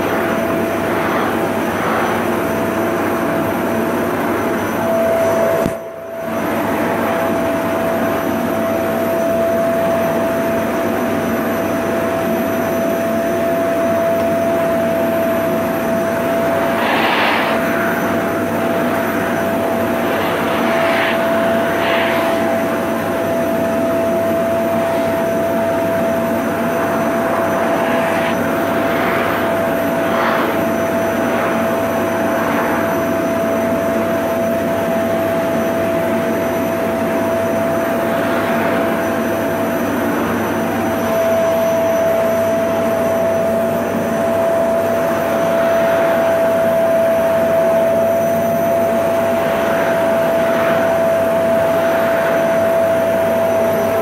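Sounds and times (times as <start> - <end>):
vacuum cleaner running: 0.0 - 54.0.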